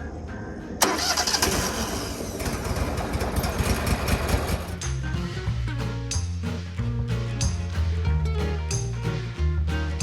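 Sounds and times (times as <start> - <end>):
upbeat guitar-led music: 4.5 - 10.0.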